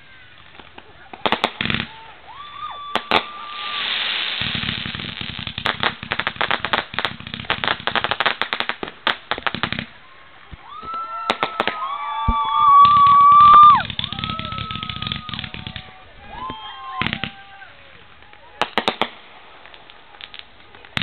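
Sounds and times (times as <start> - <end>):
fireworks crackling pops: 0.0 - 21.0
whistling fireworks: 0.0 - 21.0
sharp fireworks bangs: 0.2 - 2.1, 2.8 - 10.0, 11.2 - 21.0.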